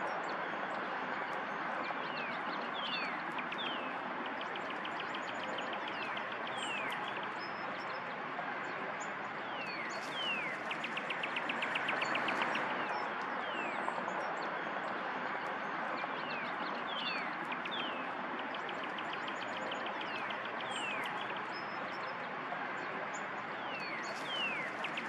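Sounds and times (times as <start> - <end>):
small birds trilling and whistling: 0.0 - 25.0
steady rushing background noise: 9.0 - 25.0.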